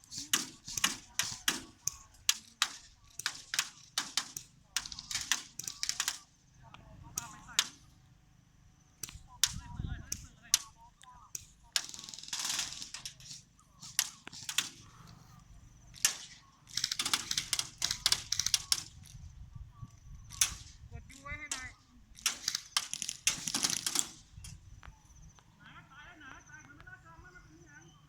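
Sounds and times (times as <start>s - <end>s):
hiss: 0.0s - 4.4s
airsoft guns firing: 0.0s - 6.4s, 7.0s - 8.0s, 8.9s - 19.2s, 20.3s - 24.5s.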